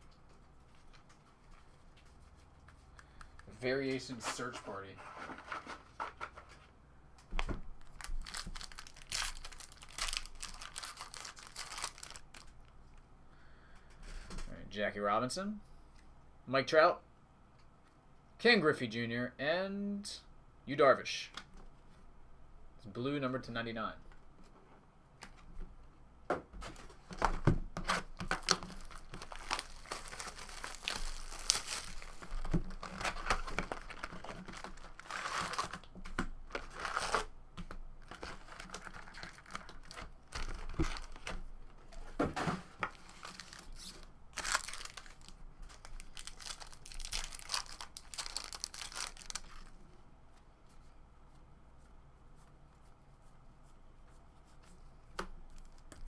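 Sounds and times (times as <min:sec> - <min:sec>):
foil wrappers tearing and crinkling: 0:07.8 - 0:12.6, 0:27.9 - 0:37.3, 0:38.0 - 0:41.4, 0:42.9 - 0:49.7.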